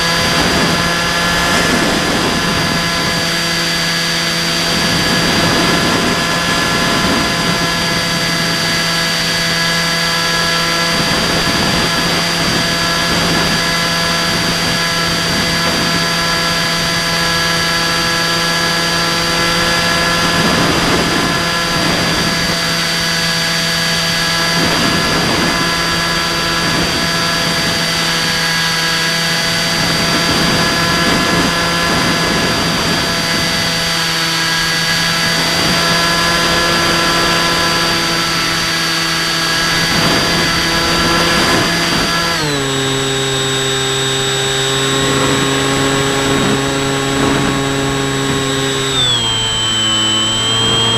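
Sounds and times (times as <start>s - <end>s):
wind rushing: 0.0s - 8.9s
electric propeller motor: 0.0s - 50.9s.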